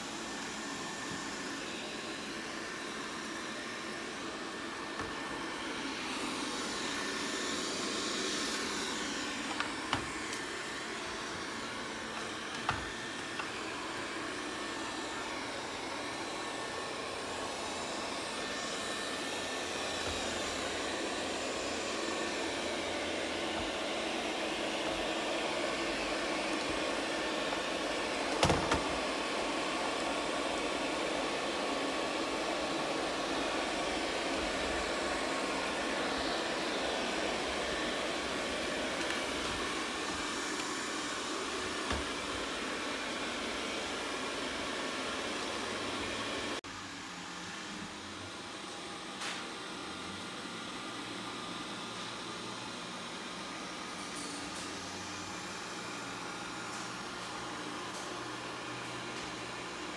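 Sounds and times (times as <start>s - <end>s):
robot vacuum whirring: 0.0s - 48.4s.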